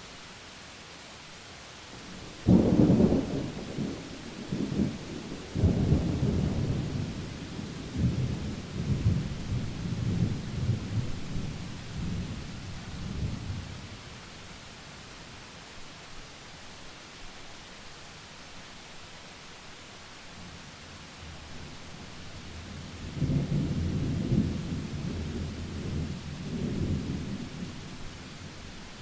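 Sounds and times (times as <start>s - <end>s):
rain hiss: 0.0s - 29.0s
thunder clap and rumble: 23.0s - 27.8s.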